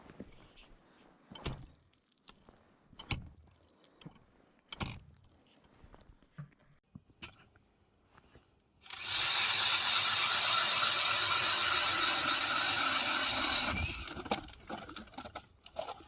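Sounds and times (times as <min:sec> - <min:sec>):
power ice auger whirring: 0:08.8 - 0:15.9.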